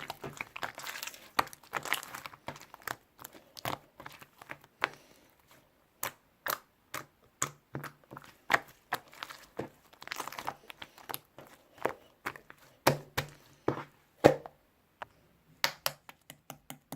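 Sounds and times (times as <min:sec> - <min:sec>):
slime squishing and popping: 0:00.0 - 0:05.0, 0:06.0 - 0:13.5.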